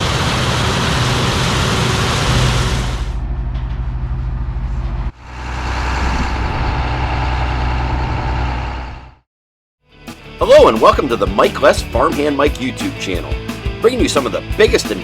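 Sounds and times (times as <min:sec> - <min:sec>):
loud rushing hiss: 0:00.0 - 0:03.2
diesel farm machinery running: 0:00.0 - 0:09.2
machine engine drone: 0:00.0 - 0:09.2.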